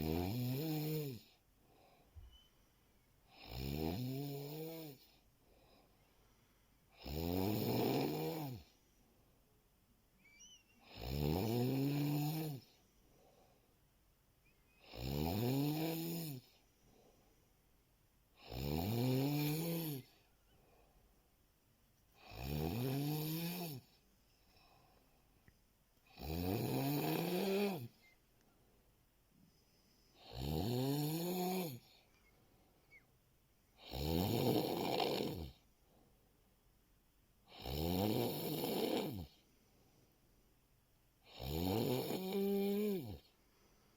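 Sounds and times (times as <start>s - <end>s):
man snoring: 0.0s - 1.4s, 3.3s - 5.2s, 6.9s - 8.7s, 10.8s - 12.7s, 14.8s - 16.6s, 18.4s - 20.2s, 22.2s - 23.9s, 26.1s - 28.0s, 30.2s - 31.9s, 33.8s - 35.6s, 37.5s - 39.4s, 41.2s - 43.3s.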